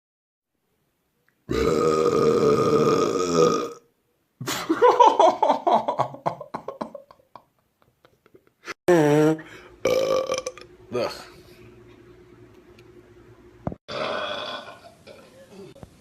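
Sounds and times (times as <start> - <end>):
person burping loudly: 1.5 - 3.9, 8.9 - 11.2, 13.9 - 15.2.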